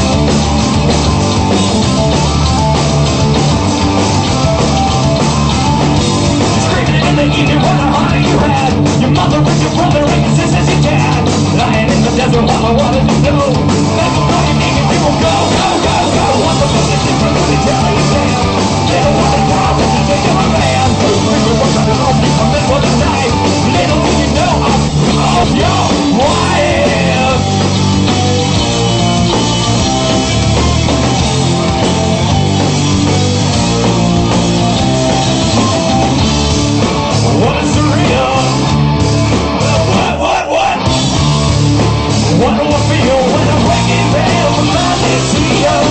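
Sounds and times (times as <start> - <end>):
rock band playing instrumental: 0.0 - 45.9.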